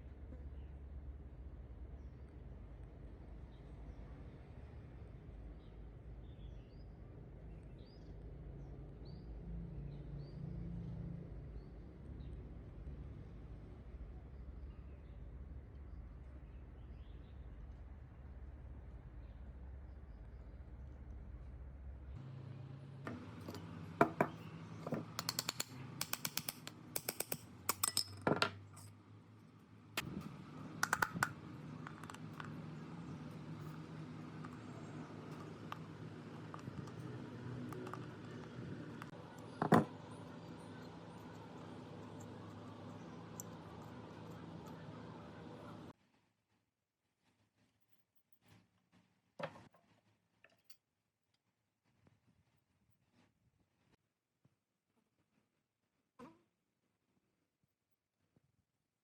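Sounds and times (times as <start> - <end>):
metal parts clinking together: 23.4 - 28.9
small birds chirping: 30.0 - 45.9.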